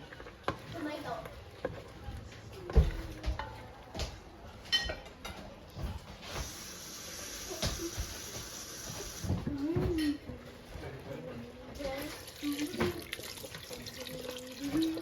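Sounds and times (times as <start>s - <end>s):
pots and utensils clattering: 2.7s - 6.6s, 11.8s - 15.0s.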